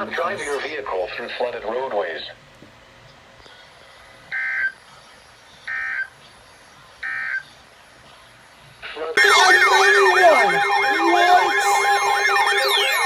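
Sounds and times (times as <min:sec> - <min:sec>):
warbling digital data bursts: 0:09.2 - 0:13.0.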